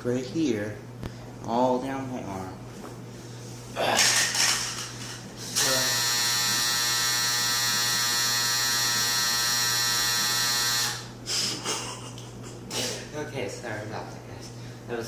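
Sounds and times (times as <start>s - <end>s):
clothes dryer buzzer: 4.4s - 11.7s.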